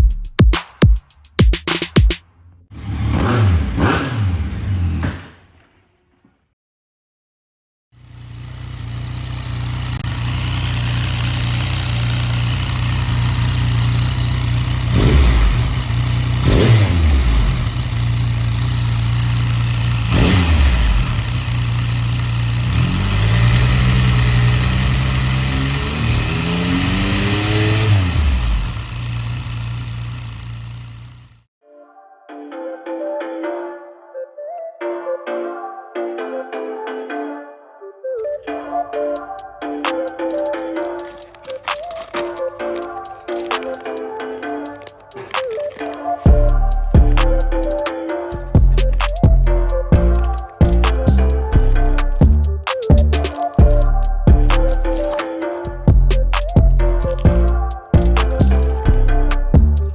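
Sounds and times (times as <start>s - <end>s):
motorcycle engine idling and revving: 2.4s - 5.5s, 8.0s - 31.5s, 46.2s - 59.9s
rattling engine noise: 8.1s - 31.4s, 44.8s - 55.2s, 55.9s - 59.9s.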